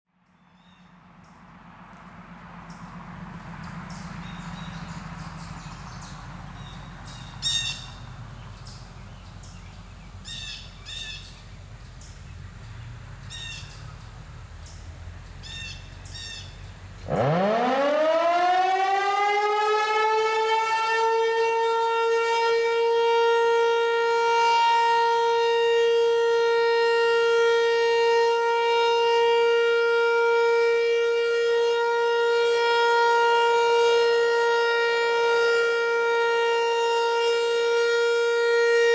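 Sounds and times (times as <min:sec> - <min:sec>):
birds chirping: 0:00.2 - 0:17.5
low background rumble: 0:00.3 - 0:17.1
warning siren winding up: 0:17.0 - 0:38.9.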